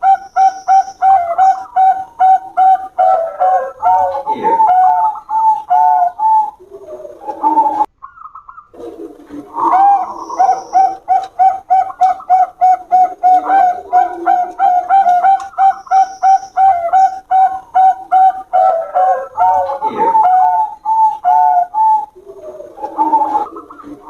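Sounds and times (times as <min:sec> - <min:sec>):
doves cooing: 0:00.0 - 0:24.0.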